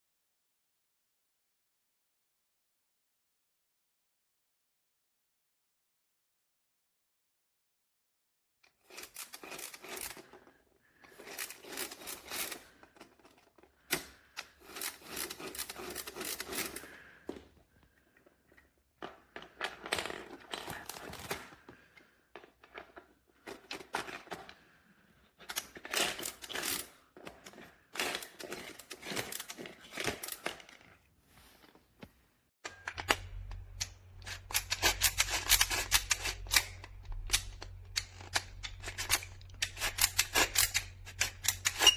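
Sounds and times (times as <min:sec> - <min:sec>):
hard plastic pieces clicking: 0:08.7 - 0:24.8, 0:25.4 - 0:31.0, 0:32.6 - 0:41.9.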